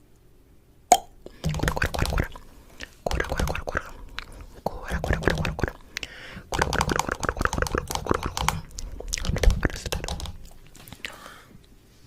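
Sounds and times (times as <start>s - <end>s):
whispery mouth sounds: 0.9s - 11.2s
chewing and crunching: 1.7s - 11.1s.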